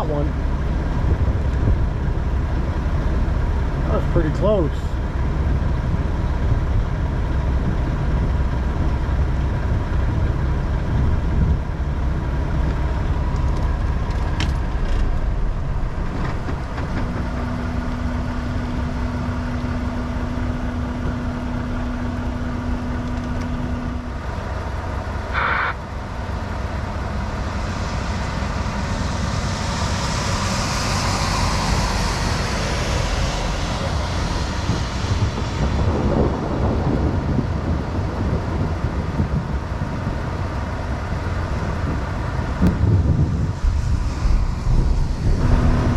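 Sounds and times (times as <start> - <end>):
truck engine and road drone: 0.0 - 45.9
steady tone: 25.2 - 36.7
high hiss: 27.1 - 35.4.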